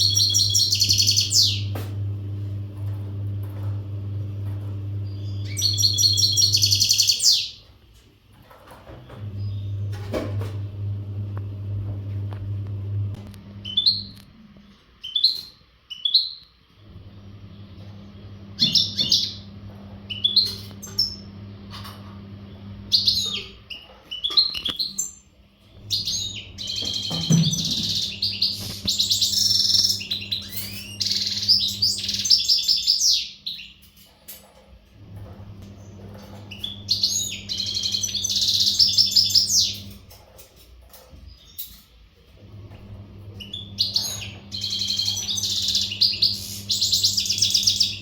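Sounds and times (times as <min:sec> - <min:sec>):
goldfinch singing: 0:00.0 - 0:01.8, 0:05.0 - 0:07.6, 0:25.9 - 0:33.7, 0:36.5 - 0:39.8, 0:43.4 - 0:48.0.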